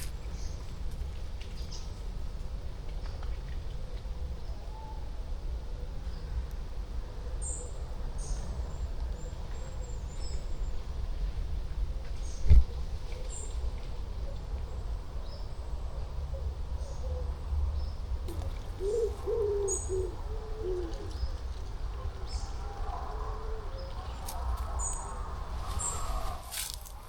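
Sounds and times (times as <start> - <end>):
wild birds calling: 16.0 - 26.6.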